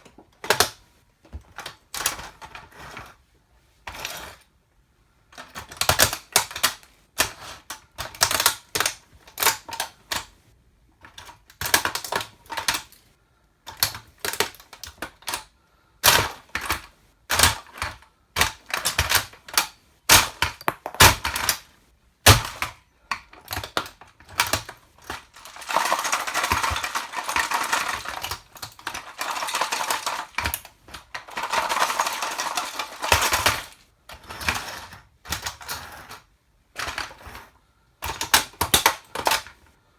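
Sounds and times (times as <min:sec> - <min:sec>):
toy car cracking under heels: 0:16.0 - 0:33.8.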